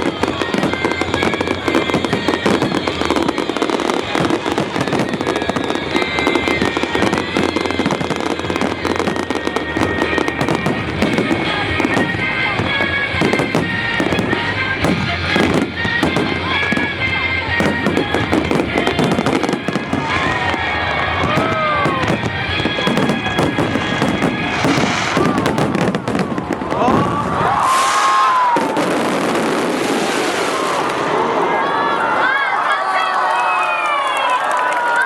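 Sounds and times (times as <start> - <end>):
music playing: 0.0 - 27.6
fireworks crackling and popping: 0.0 - 32.4.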